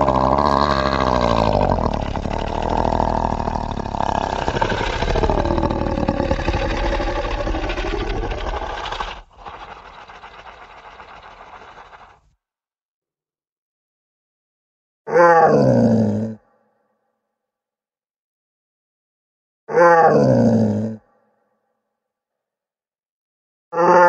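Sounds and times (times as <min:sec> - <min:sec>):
monster growl: 0:00.0 - 0:12.2.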